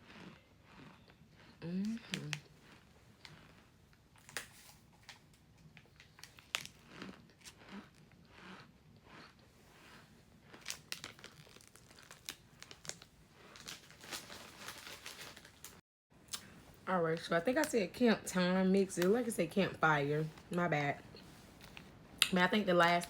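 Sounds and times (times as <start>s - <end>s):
crunchy food being bitten: 0.0s - 13.9s
plastic bags crinkling: 5.9s - 7.6s, 10.5s - 15.8s.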